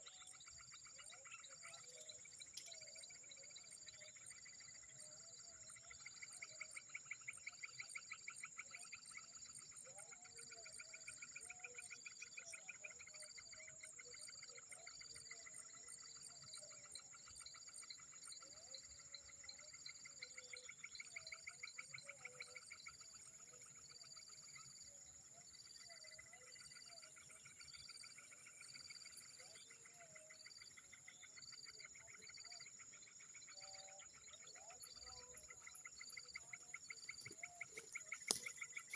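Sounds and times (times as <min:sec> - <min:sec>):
short repeated insect chirps: 0:14.3 - 0:38.9
fast pulsing insect trill: 0:27.2 - 0:38.9.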